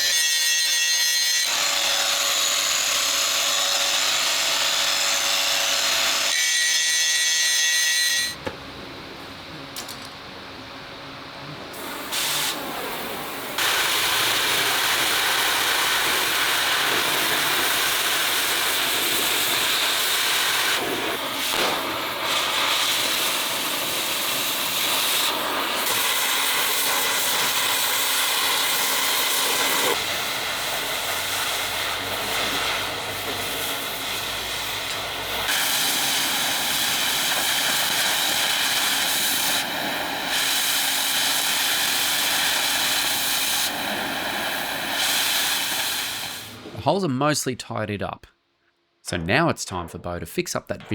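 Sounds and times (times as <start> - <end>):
power grinder grinding metal: 0.0 - 8.4.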